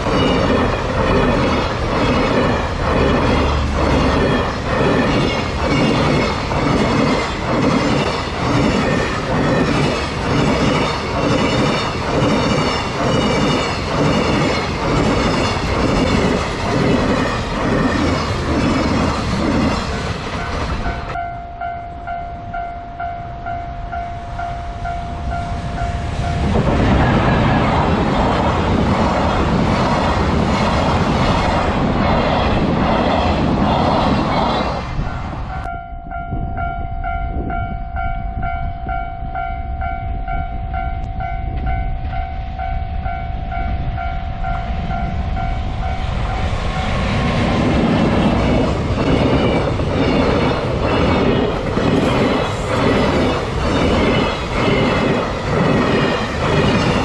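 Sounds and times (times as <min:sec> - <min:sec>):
train wheels clickety-clack: 0:00.0 - 0:21.2, 0:25.6 - 0:35.7, 0:43.5 - 0:57.0
rush of passing train: 0:00.0 - 0:57.0
level crossing bell ringing: 0:20.4 - 0:26.5.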